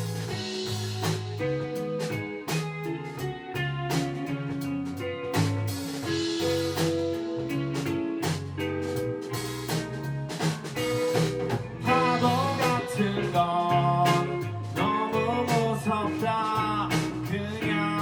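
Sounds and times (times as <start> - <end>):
drum kit beat: 0.0 - 18.0
guitar chords: 0.0 - 18.0
person singing: 11.8 - 18.0.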